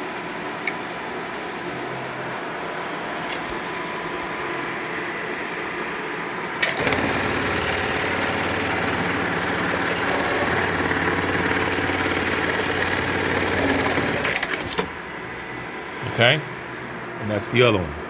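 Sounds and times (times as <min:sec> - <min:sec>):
sewing machine stitching: 0:06.6 - 0:14.9.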